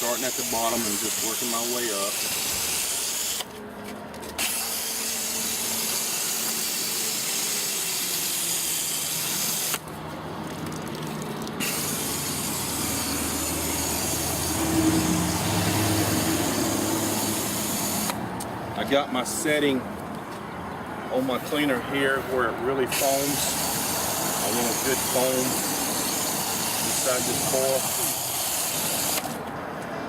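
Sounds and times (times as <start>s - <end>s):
sprayer hissing: 0.0s - 3.5s, 4.4s - 9.8s, 11.6s - 18.2s, 22.9s - 29.4s.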